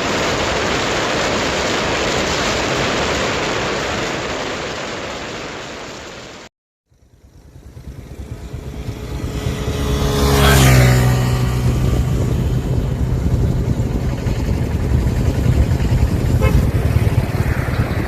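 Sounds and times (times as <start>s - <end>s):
steady rushing noise: 0.0s - 6.5s, 7.2s - 18.0s
motor engine passing by: 7.0s - 18.0s.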